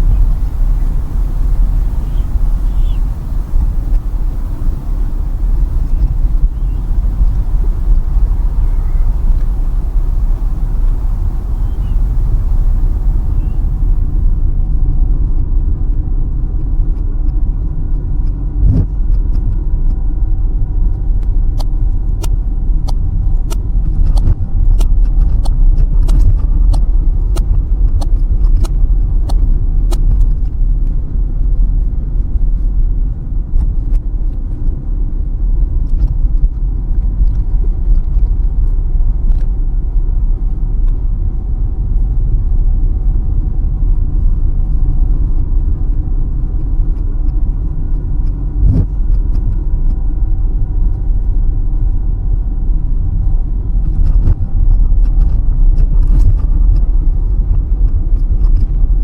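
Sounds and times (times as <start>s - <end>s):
car engine and tyre rumble: 0.0s - 19.6s.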